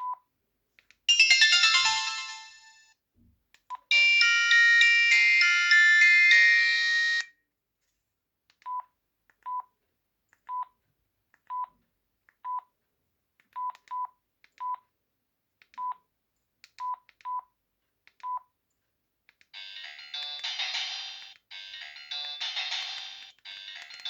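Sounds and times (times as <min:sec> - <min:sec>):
phone ringtone melody: 0:01.1 - 0:02.8, 0:03.9 - 0:07.3, 0:19.6 - 0:24.0.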